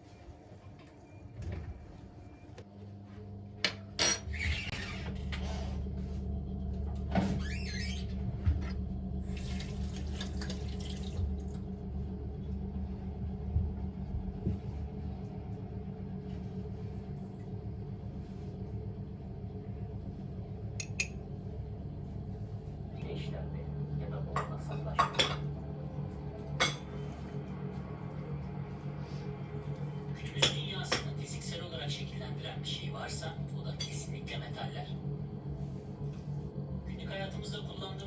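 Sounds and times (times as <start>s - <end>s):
steady low hum: 0.0s - 38.0s
water running from a tap: 9.2s - 11.8s.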